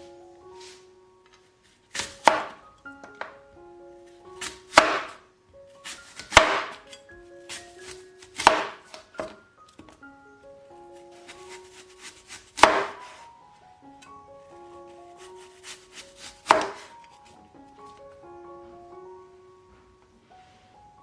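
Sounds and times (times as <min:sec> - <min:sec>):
soft background music: 0:00.0 - 0:21.0
knife chopping on cutting board: 0:02.0 - 0:02.6, 0:04.4 - 0:05.2, 0:05.8 - 0:06.9, 0:07.5 - 0:09.4, 0:11.3 - 0:13.2, 0:15.4 - 0:16.9.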